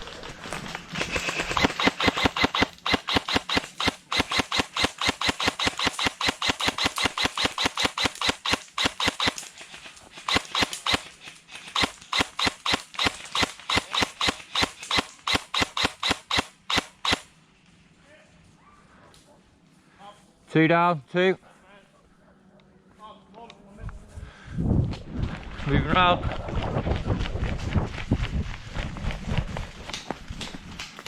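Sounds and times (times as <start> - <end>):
airsoft gun rapid shots: 0.9 - 17.3.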